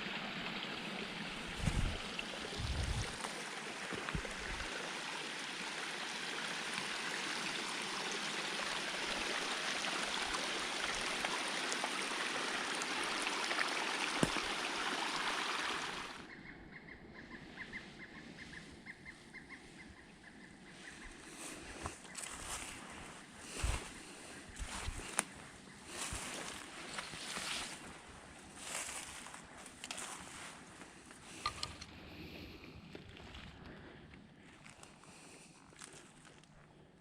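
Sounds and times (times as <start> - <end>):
running water rushing: 0.0 - 16.2.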